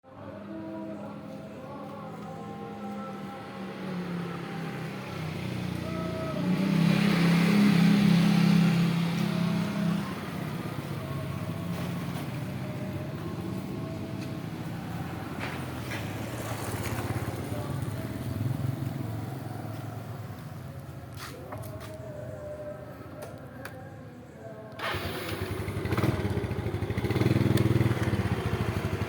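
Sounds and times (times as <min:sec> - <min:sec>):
scooter engine idling: 0:24.8 - 0:29.0.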